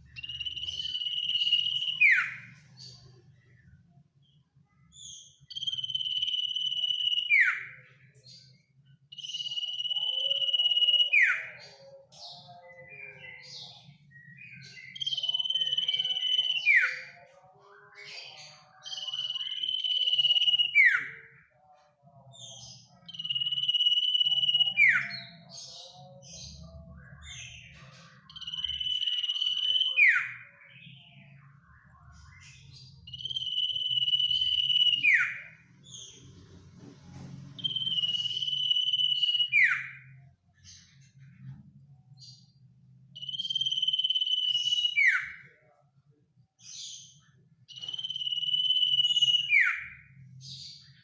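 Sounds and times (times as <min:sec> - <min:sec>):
bird whistling: 0:00.1 - 0:02.5, 0:33.1 - 0:35.6, 0:37.6 - 0:40.1, 0:43.2 - 0:45.4, 0:47.7 - 0:50.0.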